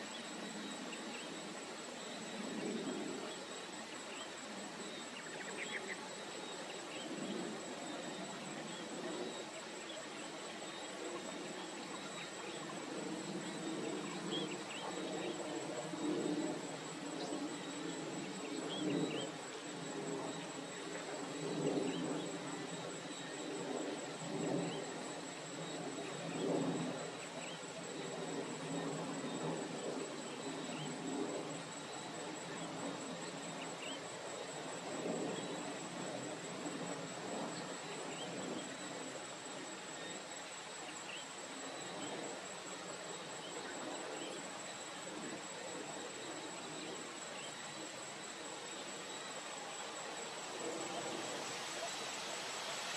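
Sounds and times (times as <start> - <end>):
high-pitched insect trill: 0.0 - 52.9
low swells of noise: 34.7 - 52.9.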